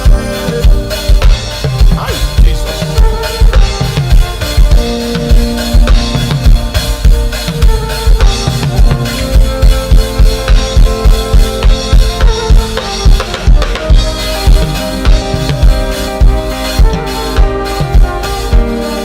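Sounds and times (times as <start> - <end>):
music with steady drum beat: 0.0 - 19.0.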